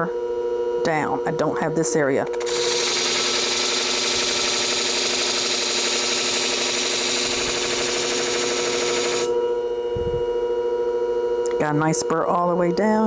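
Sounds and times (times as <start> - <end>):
machine motor hum: 2.2 - 10.7
blade grinding on abrasive: 2.3 - 9.4.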